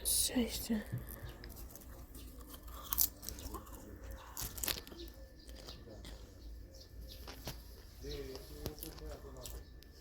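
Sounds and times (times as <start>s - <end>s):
person crunching popcorn: 1.4s - 5.7s.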